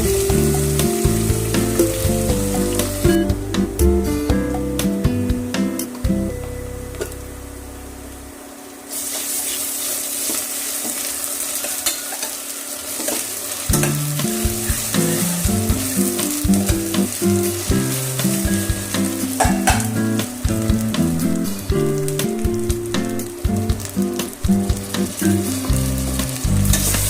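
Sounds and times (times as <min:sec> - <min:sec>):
food frying in hot oil: 0:00.0 - 0:03.3, 0:08.6 - 0:27.0
background music melody: 0:00.0 - 0:08.6, 0:13.7 - 0:27.0.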